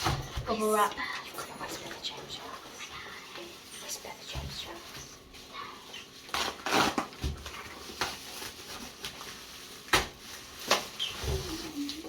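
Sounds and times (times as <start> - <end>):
bubble wrap crackling: 2.4 - 12.0
packaging rustling: 3.0 - 12.0.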